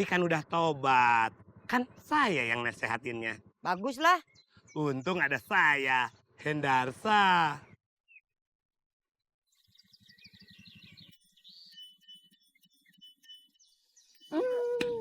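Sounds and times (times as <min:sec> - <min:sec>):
low rapid pulsing sound: 0:00.0 - 0:03.6
small birds chirping: 0:00.0 - 0:08.2, 0:09.4 - 0:15.0.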